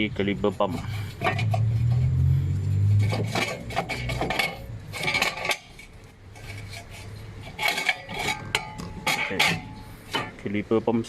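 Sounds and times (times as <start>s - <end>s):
metal clinks and clanks: 3.0s - 6.0s, 7.5s - 10.4s.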